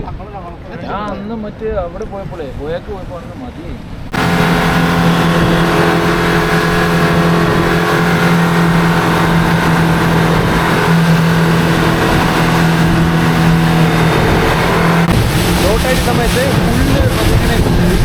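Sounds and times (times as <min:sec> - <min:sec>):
water noise: 0:00.0 - 0:18.0
wind noise: 0:01.7 - 0:18.0
boat engine droning: 0:03.9 - 0:18.0.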